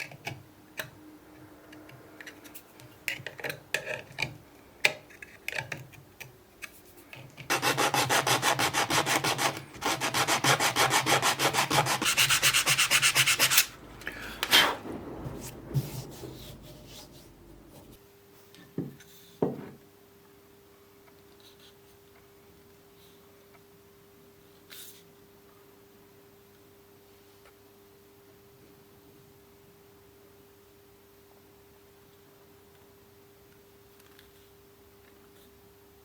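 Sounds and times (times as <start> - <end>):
hand sanding wood: 7.5 - 13.8.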